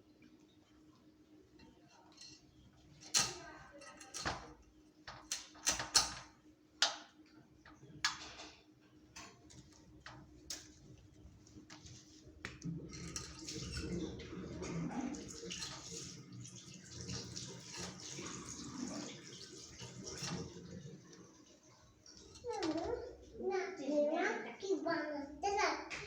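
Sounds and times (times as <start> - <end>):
kitchen utensils clicking: 1.6 - 7.0, 12.5 - 16.3, 17.0 - 21.0.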